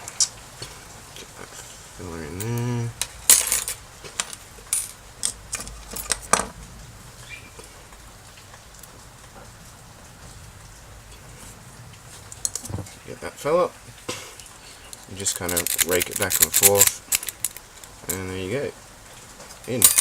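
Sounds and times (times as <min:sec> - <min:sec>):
lock pick clicking and scraping: 0:15.4 - 0:17.6.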